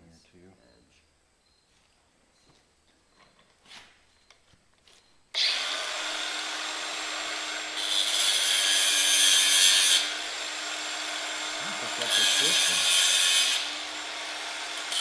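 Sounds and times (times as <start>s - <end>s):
grinder biting into metal: 5.4s - 15.0s
power grinder whining: 5.4s - 15.0s.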